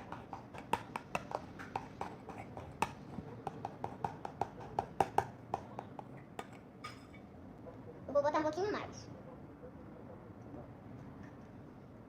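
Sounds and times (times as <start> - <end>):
spoon stirring slime in a pot: 0.0 - 7.1.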